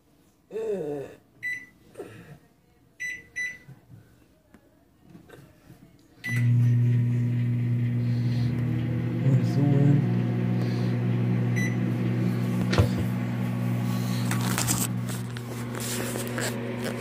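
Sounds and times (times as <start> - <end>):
microwave keypad beeping: 3.0 - 3.6, 11.5 - 11.9
microwave oven humming: 6.2 - 17.0.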